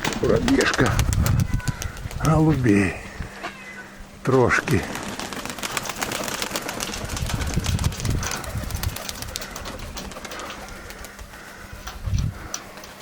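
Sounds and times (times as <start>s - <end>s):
pigeons cooing: 0.0s - 4.0s, 4.6s - 13.0s.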